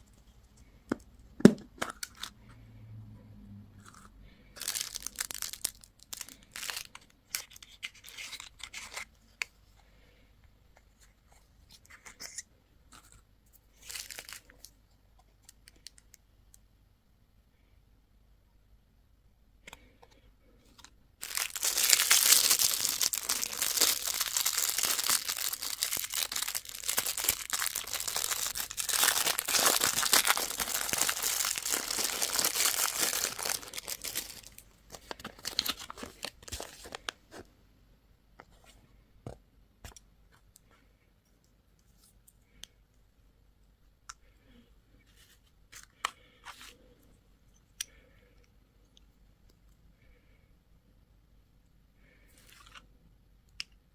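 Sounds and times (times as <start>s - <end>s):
candy packaging tearing and crinkling: 3.8s - 9.2s, 13.0s - 14.8s, 21.2s - 37.4s.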